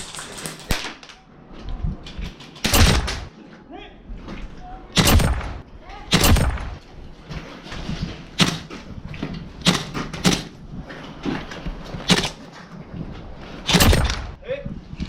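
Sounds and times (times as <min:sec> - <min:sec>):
airsoft gun shots: 0:02.6 - 0:03.3, 0:05.0 - 0:06.8, 0:09.6 - 0:10.5, 0:13.7 - 0:14.4.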